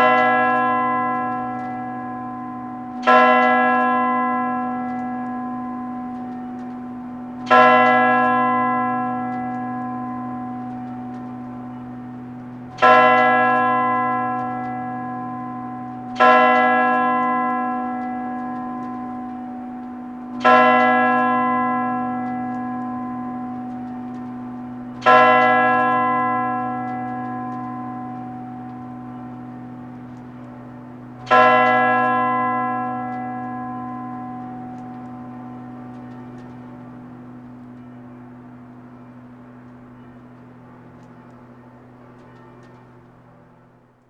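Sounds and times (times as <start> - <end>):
church bell tolling: 0.0 - 44.0.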